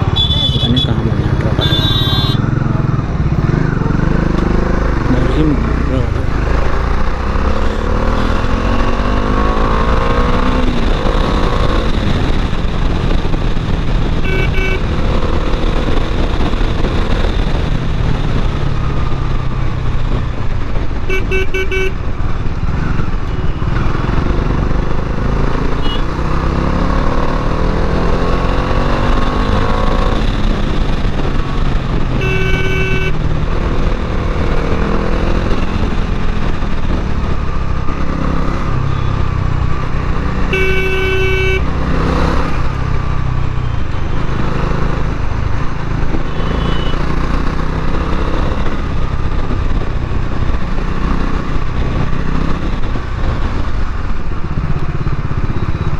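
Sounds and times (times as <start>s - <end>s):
vehicle horn honks: 0.0s - 2.5s, 14.2s - 14.9s, 21.1s - 22.0s, 25.8s - 26.1s, 32.2s - 33.2s, 40.5s - 41.7s, 46.3s - 47.1s
motorcycle engine accelerating: 0.0s - 55.9s.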